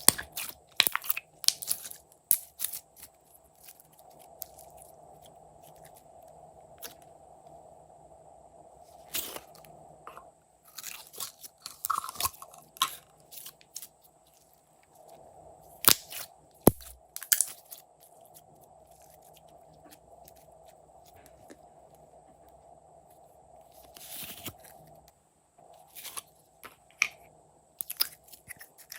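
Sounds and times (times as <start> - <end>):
slime crackling and clicking: 15.9 - 17.8.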